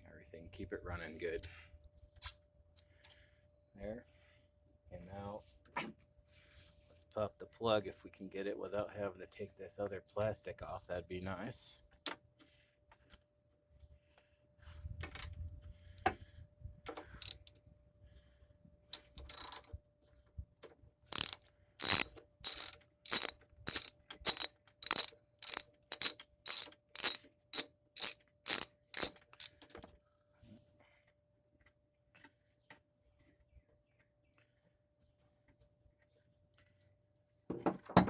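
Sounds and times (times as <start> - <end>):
handling clicks: 17.2 - 17.5, 19.0 - 19.6, 21.2 - 29.5
ratchet wrench clicking: 17.2 - 17.5, 19.0 - 19.6, 21.2 - 29.5.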